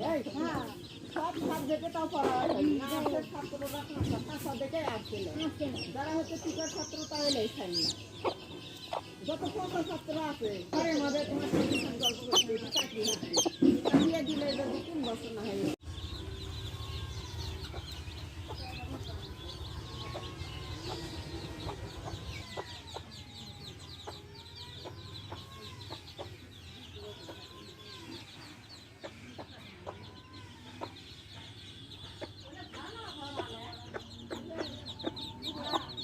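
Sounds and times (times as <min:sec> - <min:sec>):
hen clucking: 0:00.0 - 0:15.8, 0:32.1 - 0:36.0
chicks peeping: 0:00.0 - 0:36.0.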